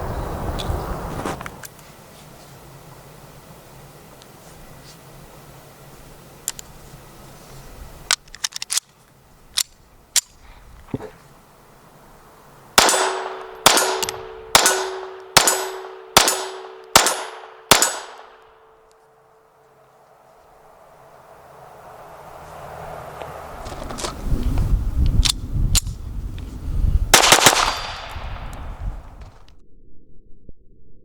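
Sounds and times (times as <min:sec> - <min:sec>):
pistol shots echoing: 0:12.8 - 0:18.8, 0:27.2 - 0:28.5.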